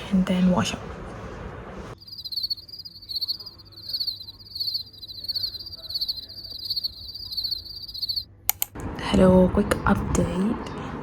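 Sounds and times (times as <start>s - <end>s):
faint low hum: 0.0s - 11.0s
insect chirping trill: 2.0s - 8.3s.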